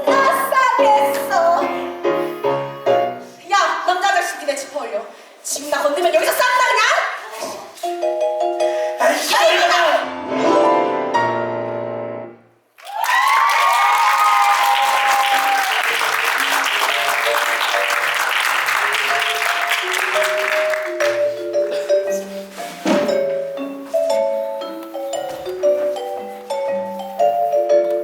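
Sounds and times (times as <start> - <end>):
instrumental music: 7.8 - 9.0, 16.7 - 28.0
cheers: 12.8 - 19.3
audience applause: 12.8 - 21.4.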